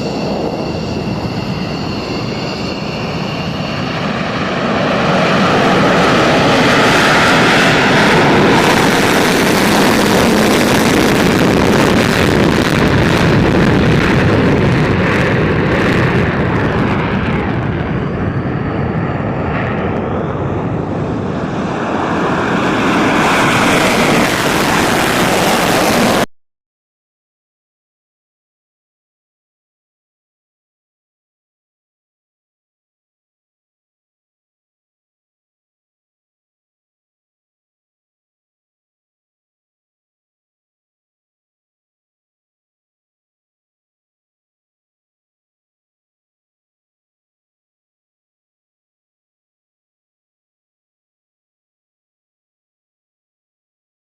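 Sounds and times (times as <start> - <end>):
fighter jet engine roar: 0.0 - 26.3.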